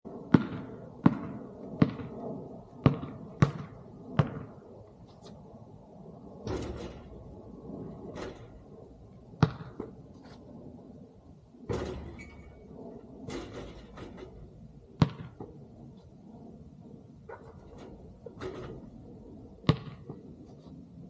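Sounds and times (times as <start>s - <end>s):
basketball bouncing on hard court: 0.3s - 2.2s, 2.8s - 4.5s, 9.4s - 10.0s, 15.0s - 15.5s, 19.6s - 20.2s.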